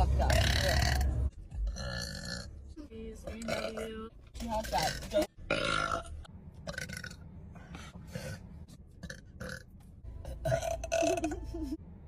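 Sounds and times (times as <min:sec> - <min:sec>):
girl burping loudly: 0:10.3 - 0:11.7.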